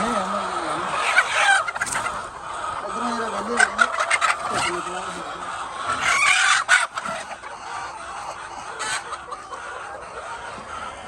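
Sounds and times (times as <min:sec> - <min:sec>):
chickens clucking: 0:00.0 - 0:11.0
loud chicken call: 0:00.0 - 0:11.0.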